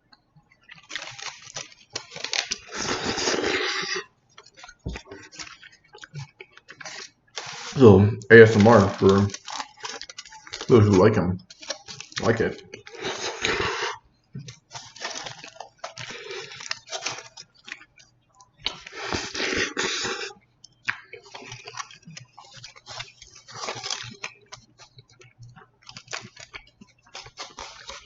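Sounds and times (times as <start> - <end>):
close chewing with small clicks: 0.0 - 7.8, 8.6 - 10.7, 11.4 - 28.0.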